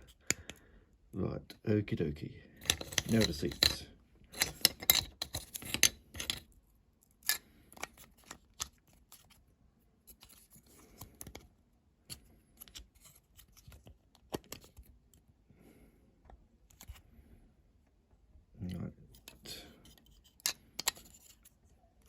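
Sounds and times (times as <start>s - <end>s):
small model parts clicking: 2.6s - 6.4s, 20.0s - 21.5s.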